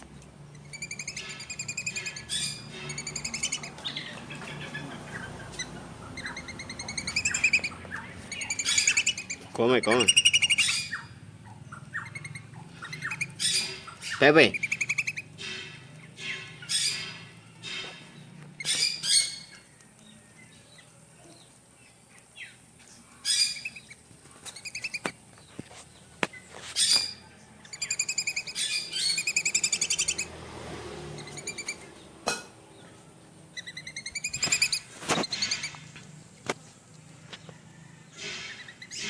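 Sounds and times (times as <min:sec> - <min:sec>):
parrot squawking: 0:00.5 - 0:18.0, 0:26.8 - 0:30.3, 0:31.2 - 0:31.9, 0:33.6 - 0:35.9.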